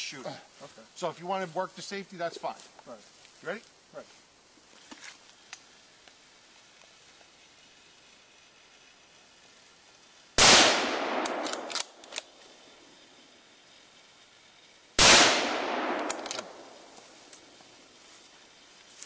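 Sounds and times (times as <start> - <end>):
faint clicks: 4.9 - 7.3
rifle shots with echo: 10.4 - 12.0, 15.0 - 16.8.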